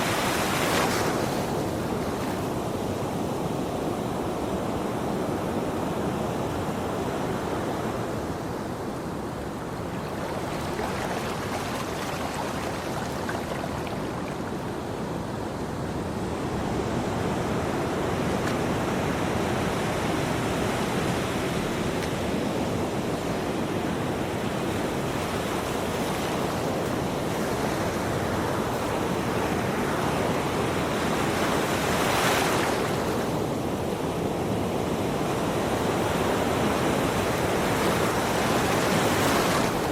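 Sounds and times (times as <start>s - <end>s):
ocean waves washing ashore: 0.0s - 39.9s
wave breaking: 9.9s - 14.6s.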